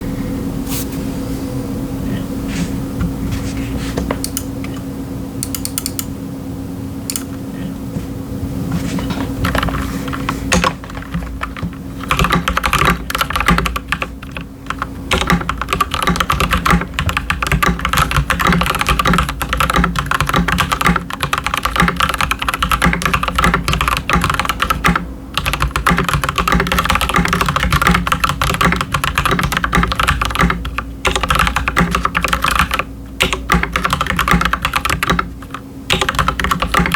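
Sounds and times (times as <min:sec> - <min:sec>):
steady hum: 0:00.0 - 0:36.9
mechanical keyboard typing: 0:04.2 - 0:04.5, 0:05.4 - 0:06.1, 0:09.4 - 0:36.9.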